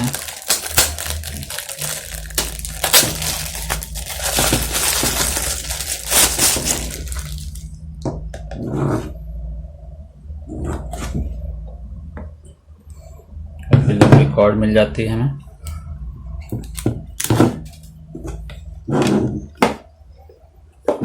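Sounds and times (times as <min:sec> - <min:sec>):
packaging crackling and rustling: 0:00.0 - 0:07.7, 0:16.7 - 0:17.9
low steady hum: 0:00.0 - 0:21.0.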